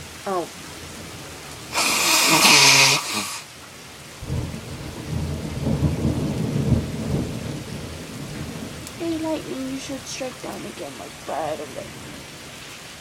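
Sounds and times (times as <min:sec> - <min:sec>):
steady rain: 0:00.0 - 0:13.0
loud short burst: 0:01.7 - 0:03.4
thunder rumbling: 0:04.2 - 0:12.5.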